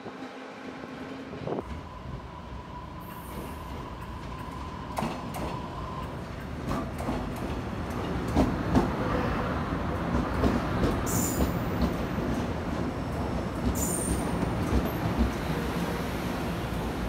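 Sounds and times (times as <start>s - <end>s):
train rumbling: 0.0s - 17.0s.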